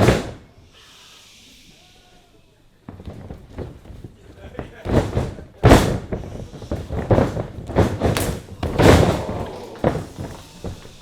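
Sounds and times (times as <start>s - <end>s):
bodies thudding on wrestling ring: 0.0s - 0.5s, 2.9s - 11.0s.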